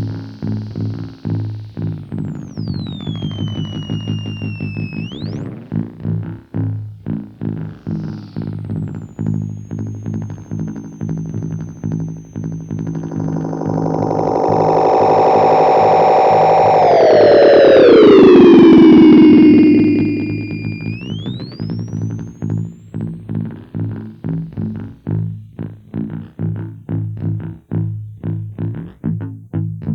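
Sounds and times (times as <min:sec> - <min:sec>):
distorted electronic drone: 0:00.2 - 0:05.5, 0:07.2 - 0:24.0
high electronic whistle: 0:00.4 - 0:05.6, 0:07.8 - 0:24.2
tone sweeping downward: 0:02.4 - 0:05.5, 0:07.9 - 0:23.0.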